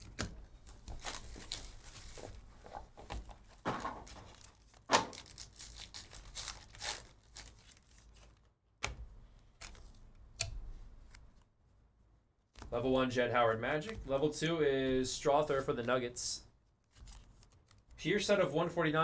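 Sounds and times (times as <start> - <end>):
card packs being torn open: 0.0 - 2.5, 4.0 - 8.5, 9.5 - 10.0
wrappers crinkling: 0.0 - 8.6, 12.6 - 18.0.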